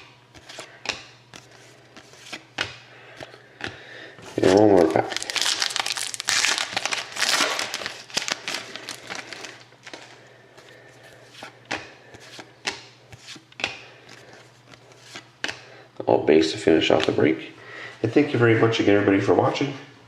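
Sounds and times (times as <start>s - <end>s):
foil wrapper crinkling and tearing: 4.3s - 10.1s.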